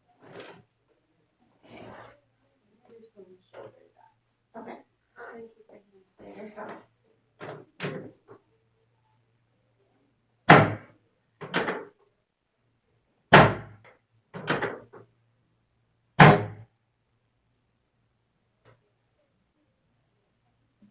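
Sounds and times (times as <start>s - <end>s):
heavy thumps on treatment table: 16.2s - 16.6s.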